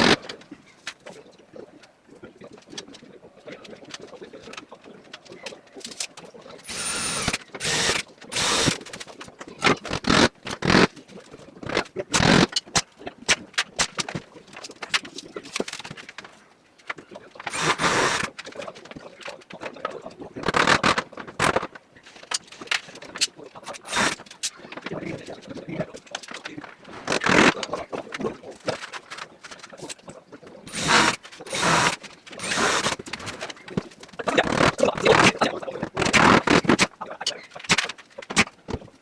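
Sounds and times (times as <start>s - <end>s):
power tool bursts: 0.0s - 0.2s, 6.7s - 8.9s, 9.6s - 10.9s, 12.2s - 12.5s, 17.5s - 18.3s, 23.7s - 24.3s, 27.0s - 27.6s, 30.7s - 33.4s, 34.4s - 35.3s.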